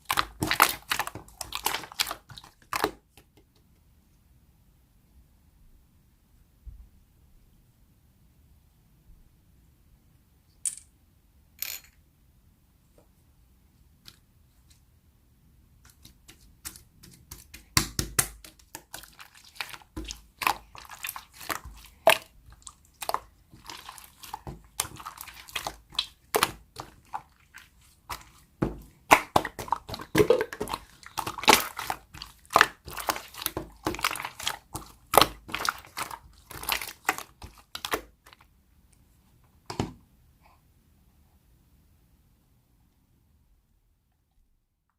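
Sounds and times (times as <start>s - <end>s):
slime squishing with sticky pops: 0.0s - 3.4s, 15.8s - 38.5s.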